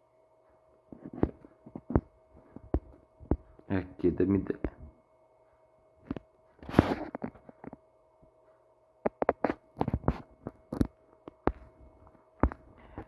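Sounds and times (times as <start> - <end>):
faint steady hum: 0.0 - 13.0
sharp clicks and taps: 9.0 - 11.7.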